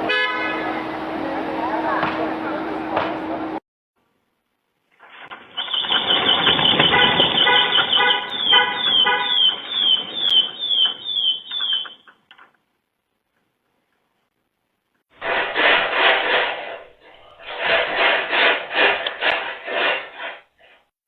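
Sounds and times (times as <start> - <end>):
electronic alarm falling sweeps: 5.4 - 12.0
pulsing tone: 5.4 - 12.0.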